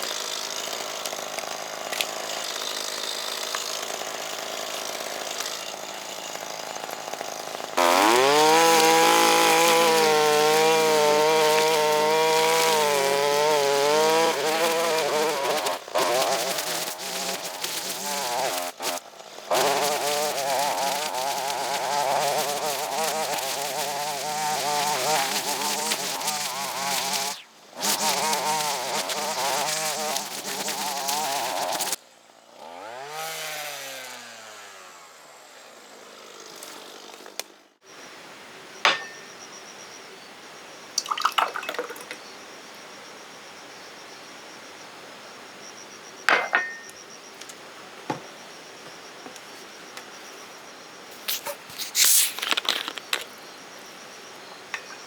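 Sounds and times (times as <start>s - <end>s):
two-stroke engine revving: 7.8s - 32.0s.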